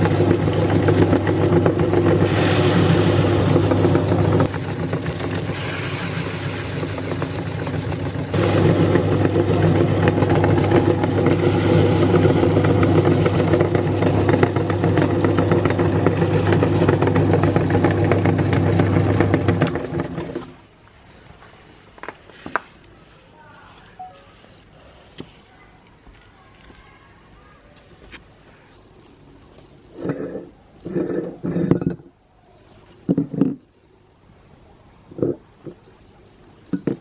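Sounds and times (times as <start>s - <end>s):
grinding clatter: 0.6s - 9.4s
meat grinder motor humming: 4.5s - 19.6s.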